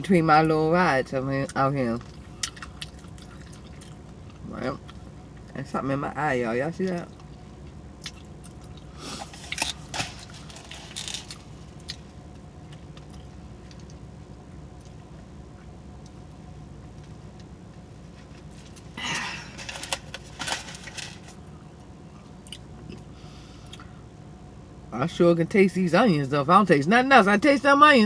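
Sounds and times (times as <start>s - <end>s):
steady low hum: 0.0s - 28.0s
chewing and lip smacking: 2.0s - 5.5s, 7.0s - 10.4s, 11.2s - 16.2s, 22.1s - 23.9s.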